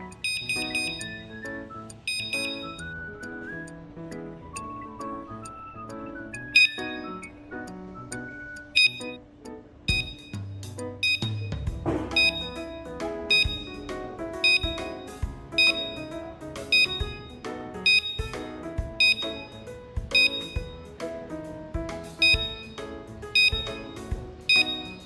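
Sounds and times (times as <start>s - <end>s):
background music with beat: 0.0s - 25.0s
bright percussive hit: 11.2s - 13.9s.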